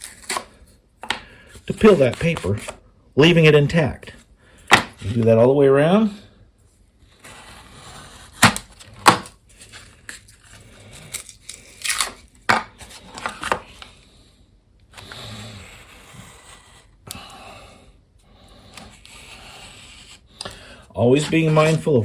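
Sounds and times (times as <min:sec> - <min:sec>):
paper tearing: 0:00.0 - 0:00.6, 0:21.1 - 0:22.0
drywall snapping and crunching: 0:08.4 - 0:09.4.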